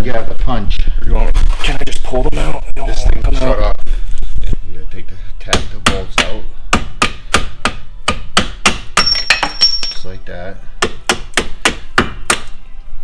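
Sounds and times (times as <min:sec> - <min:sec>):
hammer striking metal bolts: 0:05.5 - 0:10.1.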